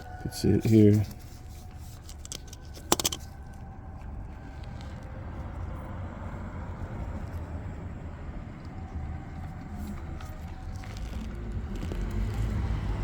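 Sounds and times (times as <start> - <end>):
small metal tools clicking: 2.0 - 3.3.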